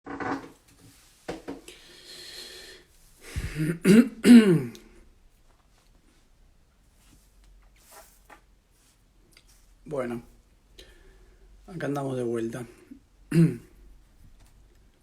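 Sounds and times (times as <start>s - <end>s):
person clearing throat: 3.4s - 4.8s, 13.3s - 13.8s.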